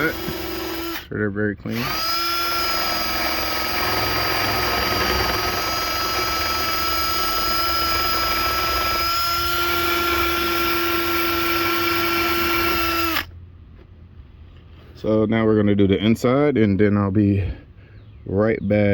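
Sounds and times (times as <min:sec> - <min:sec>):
drill motor whine: 0:00.0 - 0:01.1, 0:01.7 - 0:13.3.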